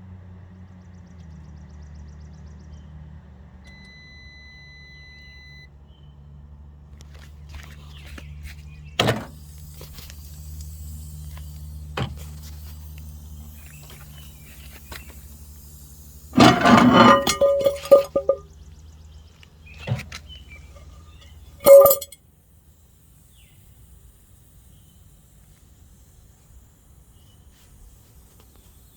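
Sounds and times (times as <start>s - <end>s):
thump: 9.0s - 9.3s
rattling and clattering: 16.4s - 18.4s, 21.6s - 22.2s.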